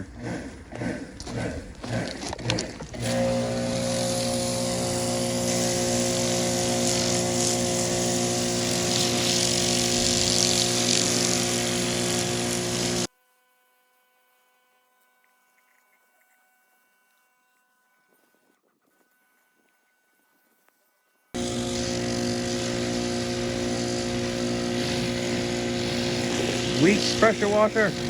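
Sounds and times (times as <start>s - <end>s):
pressure washer motor hum: 0.0s - 13.1s, 21.4s - 28.0s
water spray hissing: 3.1s - 13.1s, 21.4s - 28.0s.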